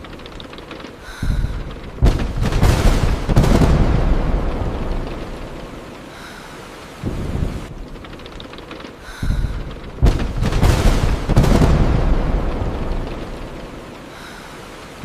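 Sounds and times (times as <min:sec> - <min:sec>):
thunder rumbling and cracking: 0:00.0 - 0:06.3, 0:07.0 - 0:15.0
steady rain: 0:00.0 - 0:15.0.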